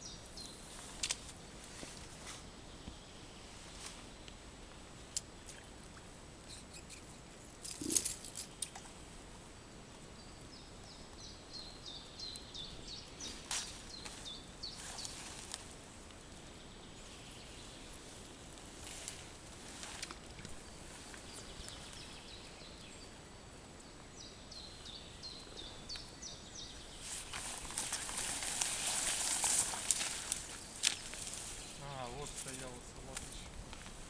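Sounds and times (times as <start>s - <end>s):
songbird chirping: 0.0s - 9.0s, 9.9s - 33.6s
rustles and clicks: 7.5s - 8.8s, 27.0s - 34.0s.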